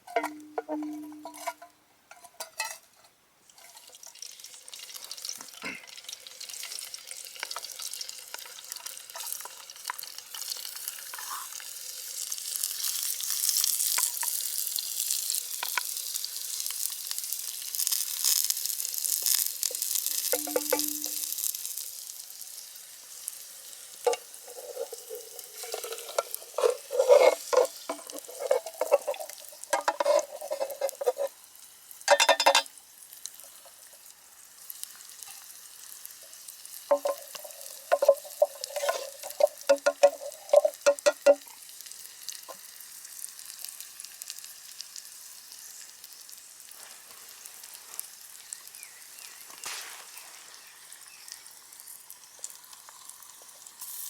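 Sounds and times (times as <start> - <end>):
utensil scraping a tin: 0.0 - 3.8, 11.1 - 11.6, 20.3 - 21.3, 24.1 - 31.4, 36.9 - 41.4
food sizzling in a metal tin: 0.0 - 54.0.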